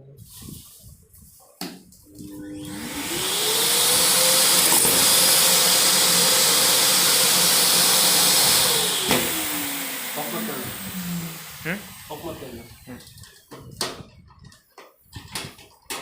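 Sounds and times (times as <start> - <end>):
vacuum cleaner motor whine: 2.1 - 13.5.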